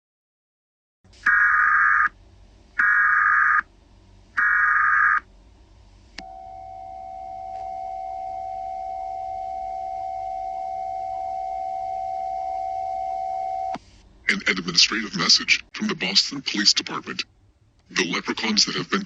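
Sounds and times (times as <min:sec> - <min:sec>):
steady electronic alert tone: 0:06.2 - 0:13.8.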